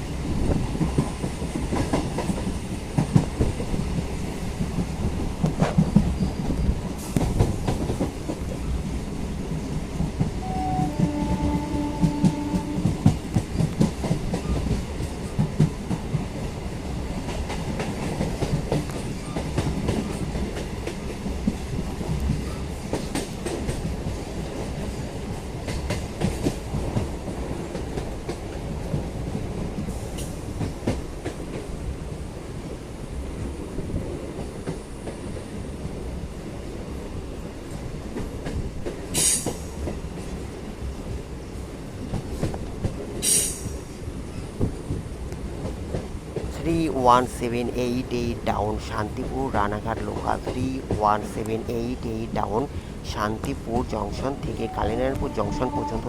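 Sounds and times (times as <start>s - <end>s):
brief tone: 10.4s - 12.6s
train wheels clattering: 38.2s - 40.5s.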